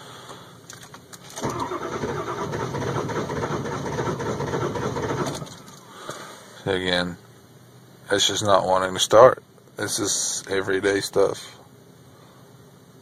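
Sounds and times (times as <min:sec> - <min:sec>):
diesel engine cranking: 0:00.7 - 0:05.8.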